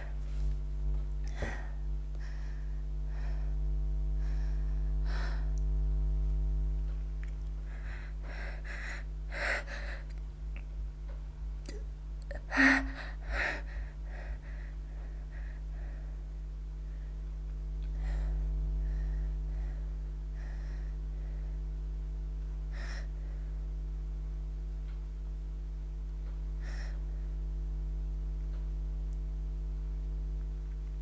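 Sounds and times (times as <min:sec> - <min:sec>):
steady hum: 0:00.0 - 0:31.0
person gasping breaths: 0:01.2 - 0:05.6, 0:07.6 - 0:10.2, 0:11.7 - 0:17.2, 0:17.9 - 0:21.6, 0:26.6 - 0:27.3.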